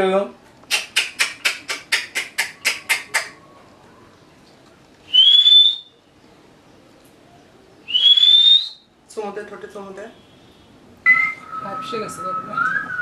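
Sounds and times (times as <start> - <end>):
sharp clicking: 0.6 - 3.4
rising whistle: 5.1 - 6.0, 7.9 - 8.8, 11.0 - 13.0.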